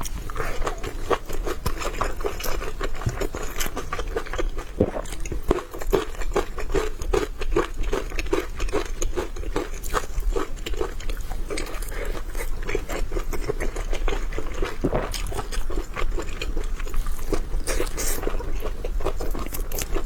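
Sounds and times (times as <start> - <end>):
chewing with wet mouth sounds: 0.0 - 20.0.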